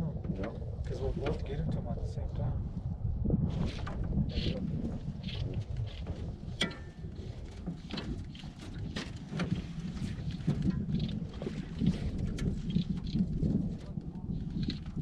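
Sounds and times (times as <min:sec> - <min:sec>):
wind buffeting microphone: 0:00.0 - 0:15.0
water lapping against boat: 0:03.6 - 0:15.0
small knocks and splashes: 0:06.0 - 0:11.8.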